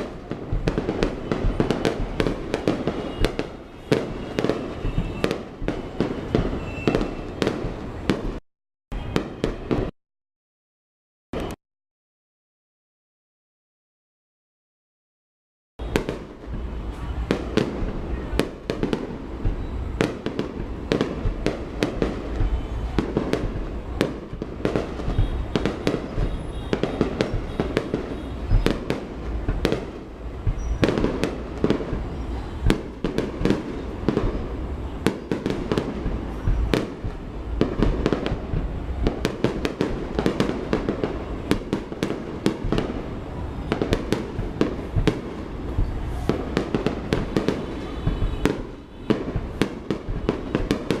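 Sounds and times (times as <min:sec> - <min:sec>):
fireworks shell bursts and bangs: 0:24.3 - 0:34.5.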